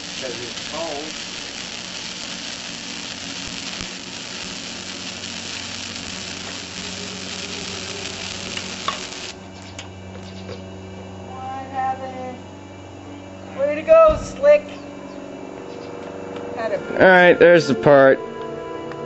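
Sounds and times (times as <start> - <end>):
arc welding crackling sizzle: 0.0 - 10.6, 13.5 - 14.7.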